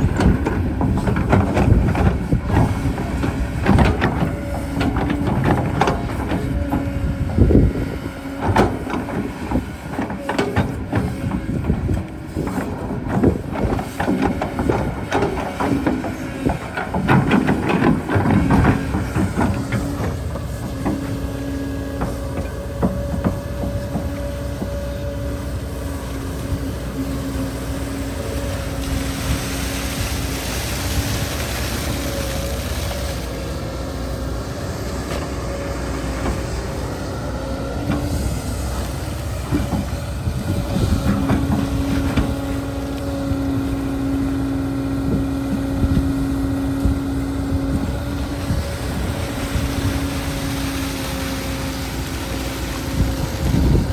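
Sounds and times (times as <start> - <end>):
knocks and scraping: 0.0 - 26.1
excavator motor hum: 0.0 - 53.9.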